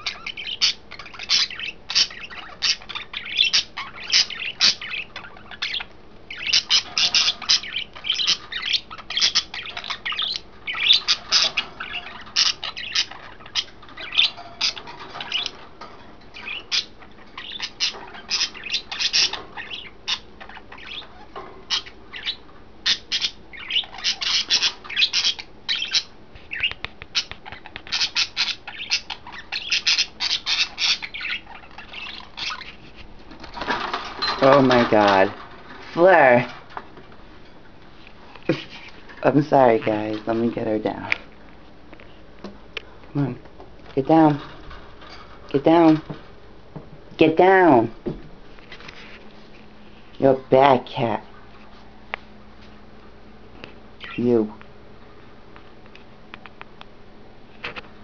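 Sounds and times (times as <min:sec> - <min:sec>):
budgerigars chattering and squawking: 0:00.0 - 0:36.8, 0:44.0 - 0:46.2, 0:53.9 - 0:54.5.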